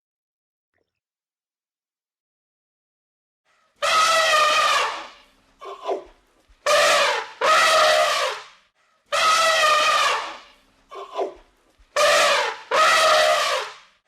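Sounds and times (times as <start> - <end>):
elephant trumpeting: 3.8 - 8.5, 9.1 - 11.4, 12.0 - 13.8.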